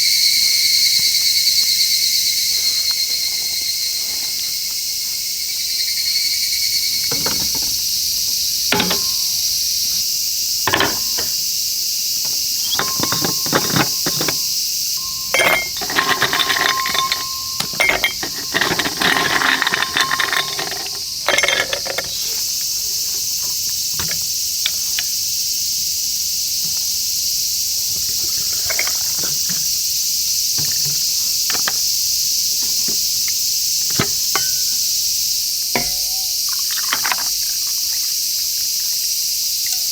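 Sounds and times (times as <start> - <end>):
crickets chirping: 0.0 - 39.9
knocks and clattering: 7.0 - 9.8, 10.7 - 11.4, 12.2 - 24.8, 28.0 - 29.7, 33.9 - 34.8, 35.8 - 37.4.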